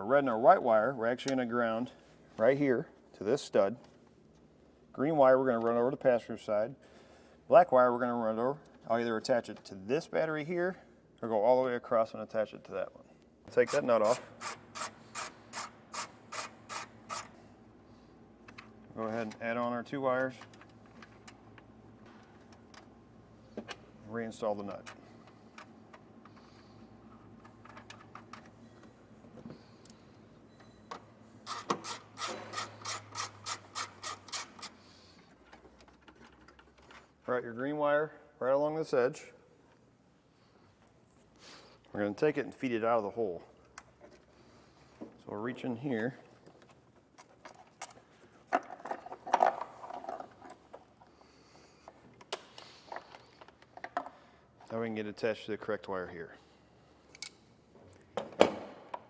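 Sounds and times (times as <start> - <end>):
rubbing and handling of tools: 13.5 - 37.7, 43.3 - 54.9
ratchet wrench clicking: 13.6 - 17.3, 31.5 - 34.8.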